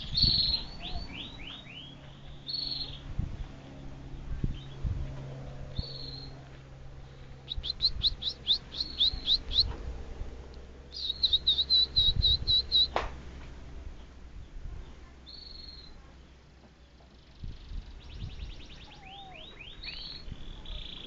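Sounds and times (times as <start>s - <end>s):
canary singing: 0.0s - 3.1s, 5.8s - 6.4s, 7.4s - 9.8s, 10.9s - 13.0s, 15.3s - 16.0s, 17.6s - 21.0s.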